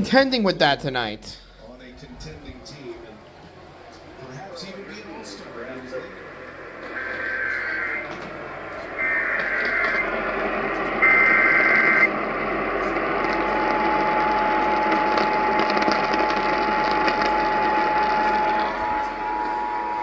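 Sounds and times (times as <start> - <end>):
steady attention tone: 0.0 - 1.6, 3.6 - 20.0
steady hiss: 1.4 - 20.0
screeching digital data bursts: 4.9 - 20.0.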